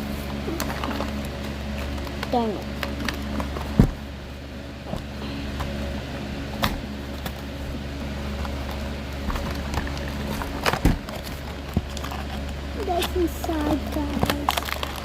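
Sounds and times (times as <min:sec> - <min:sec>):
steady low hum: 0:00.0 - 0:15.0
packaging crinkling: 0:08.3 - 0:15.0.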